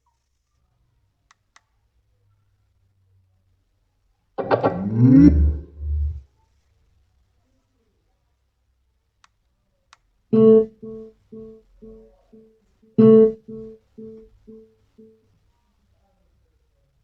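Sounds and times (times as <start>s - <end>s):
guitar music from speaker: 10.4s - 12.1s, 13.0s - 14.6s.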